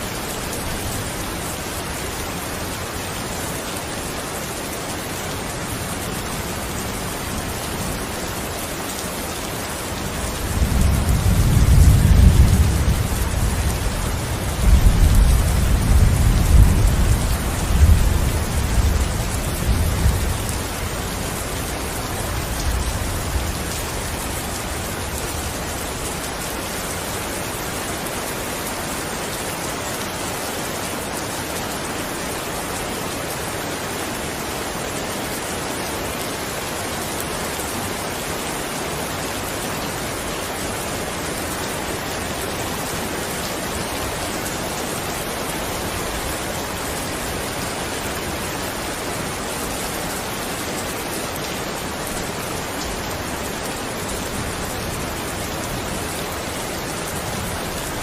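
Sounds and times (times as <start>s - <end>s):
steady rain: 0.0s - 58.0s
low rumble of thunder: 10.3s - 25.6s.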